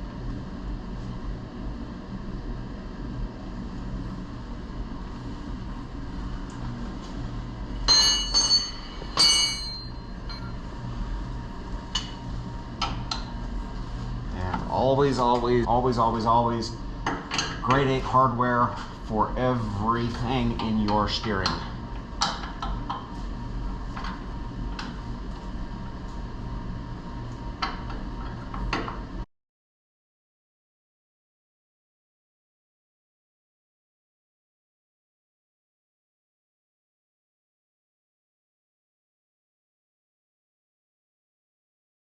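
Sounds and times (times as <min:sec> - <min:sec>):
steady low hum: 0:00.0 - 0:29.3
metal tools clanking on metal: 0:07.9 - 0:10.5.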